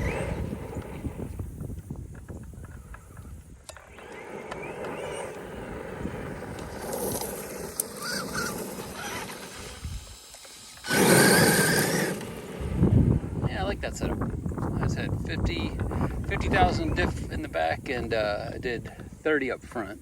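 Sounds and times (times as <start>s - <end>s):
electric motor whining: 0.0s - 1.5s, 3.7s - 13.4s.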